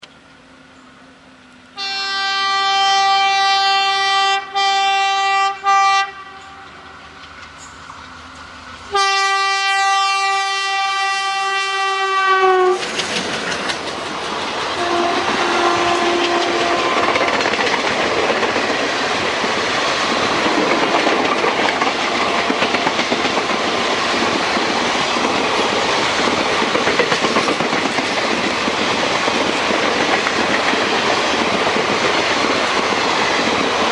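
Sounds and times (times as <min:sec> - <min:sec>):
train rushing past: 0:00.1 - 0:33.9
locomotive horn blast: 0:01.8 - 0:06.9, 0:08.9 - 0:12.8, 0:14.8 - 0:17.3
wheels clacking over rail joints: 0:06.4 - 0:09.0, 0:12.6 - 0:33.9.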